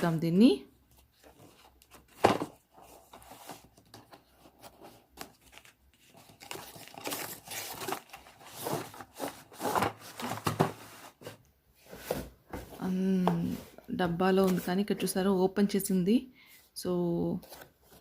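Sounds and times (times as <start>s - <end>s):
packaging rustling and crinkling: 1.0s - 11.3s.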